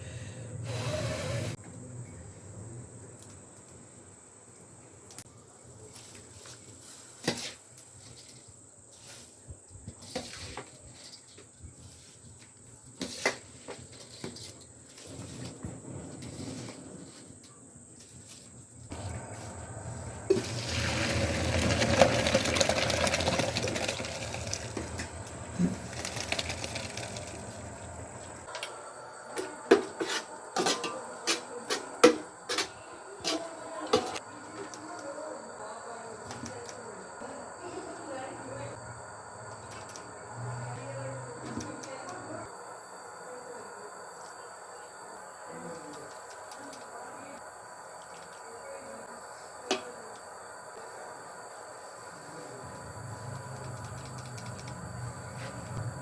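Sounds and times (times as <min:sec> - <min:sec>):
liquid pouring into a pot: 0:20.3 - 0:27.8
pots and utensils clinking: 0:29.8 - 0:32.7.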